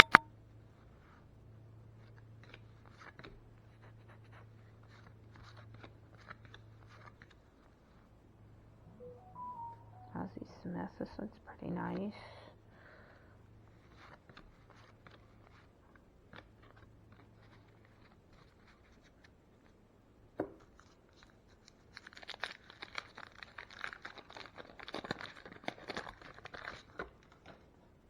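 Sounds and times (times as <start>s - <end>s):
wax paper crinkling and tearing: 20.8s - 27.6s
wax paper wrapper clicks: 21.2s - 27.6s.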